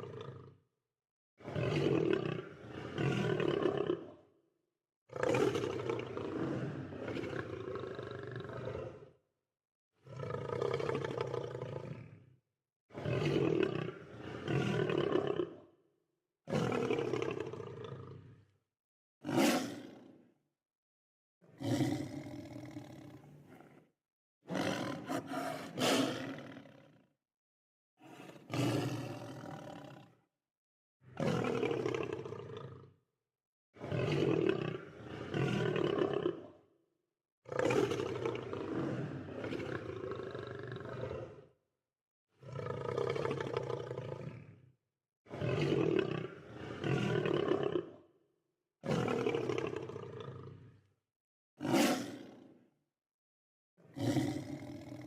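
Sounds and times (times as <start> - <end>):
lions roaring: 24.5 - 26.7, 51.6 - 52.1, 54.0 - 55.0.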